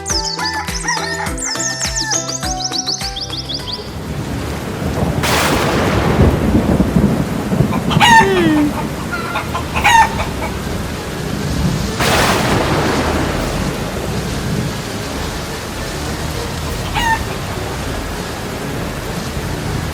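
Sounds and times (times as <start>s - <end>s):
rain-like hiss: 3.8s - 19.9s
rushing swells: 3.9s - 19.9s
bird calling: 7.4s - 11.9s, 14.9s - 19.6s.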